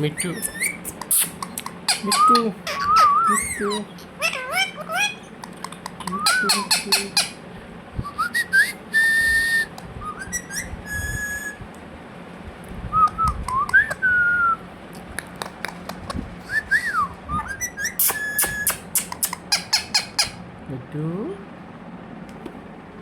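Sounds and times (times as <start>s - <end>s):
parrot whistling: 0.2s - 5.3s, 6.0s - 7.4s, 8.1s - 11.6s, 16.5s - 20.4s
harsh high parrot calls: 0.2s - 7.4s, 17.5s - 20.4s.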